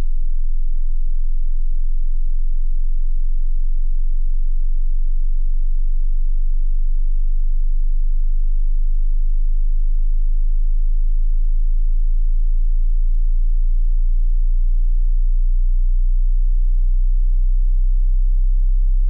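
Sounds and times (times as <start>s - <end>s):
low-pitched sine tone: 0.0s - 19.0s.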